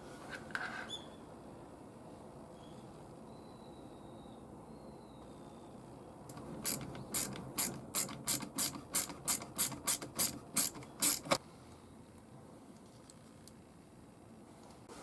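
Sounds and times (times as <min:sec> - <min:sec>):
ratcheting hand tool clicking: 0:06.3 - 0:11.4.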